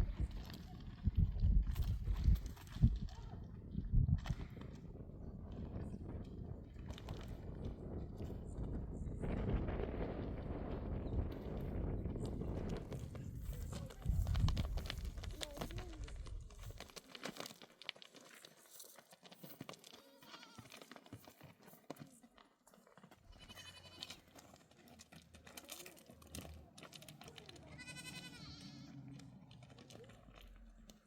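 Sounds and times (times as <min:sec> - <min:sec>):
livestock bleating: 0:20.0 - 0:20.7, 0:23.3 - 0:24.2, 0:27.7 - 0:29.1.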